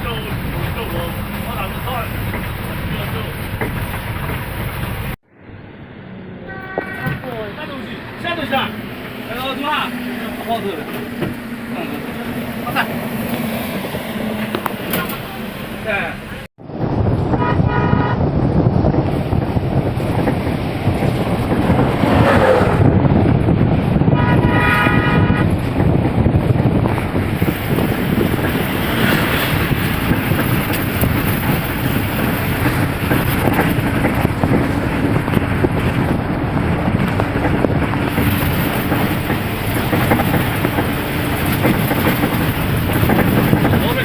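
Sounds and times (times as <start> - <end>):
road traffic rumble: 0.0 - 44.0
vehicle horn honking: 6.4 - 7.3, 17.3 - 18.3, 24.1 - 25.5.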